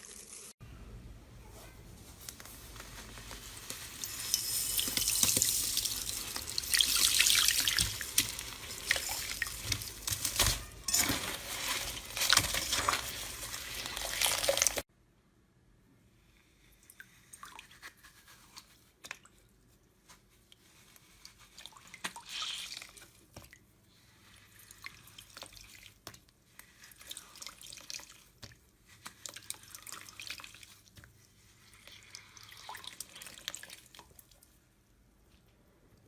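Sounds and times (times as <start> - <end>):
liquid dripping and splashing: 3.6 - 14.8.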